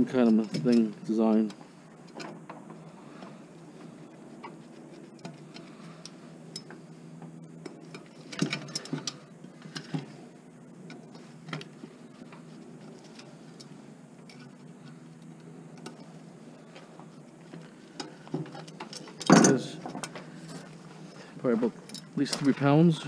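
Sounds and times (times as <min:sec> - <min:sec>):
metal parts and tools clinking: 0:00.0 - 0:02.3, 0:04.5 - 0:10.1, 0:17.9 - 0:22.8.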